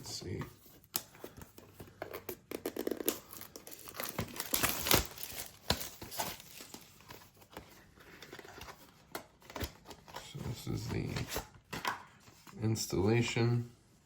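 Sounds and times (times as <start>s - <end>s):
packaging crinkling and tearing: 2.2s - 7.5s.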